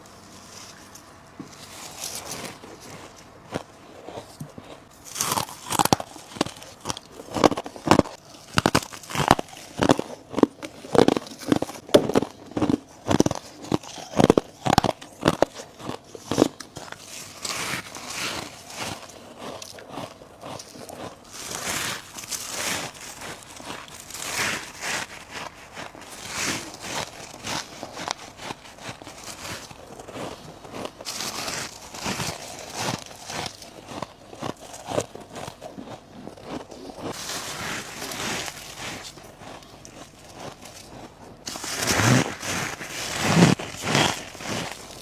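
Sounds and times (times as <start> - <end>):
person crunching ice: 0.0 - 45.0.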